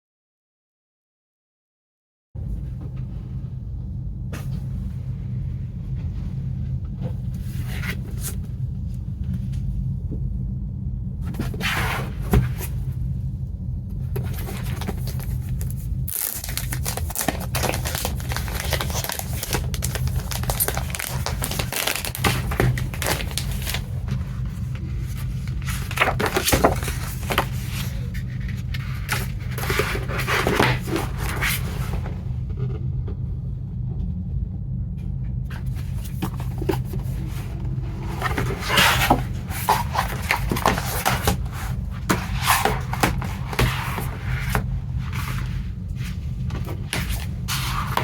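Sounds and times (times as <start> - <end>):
low hum: 2.4 - 48.0
plastic cases and cardboard handled: 14.0 - 32.2, 35.5 - 48.0.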